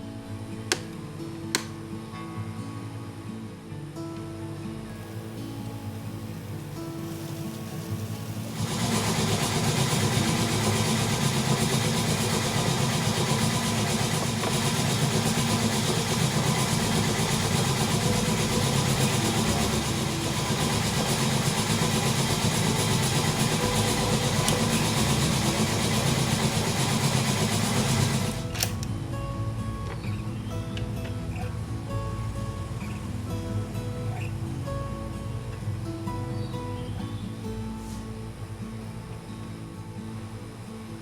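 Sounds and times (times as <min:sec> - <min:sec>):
mini lathe running: 0:07.0 - 0:28.7.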